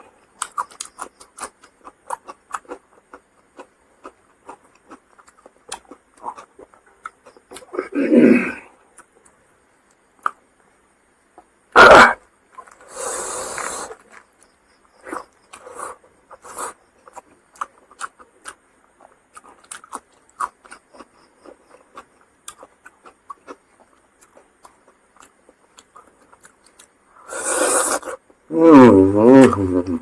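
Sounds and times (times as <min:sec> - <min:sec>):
chewing and lip smacking: 0:00.3 - 0:07.7, 0:14.0 - 0:27.0.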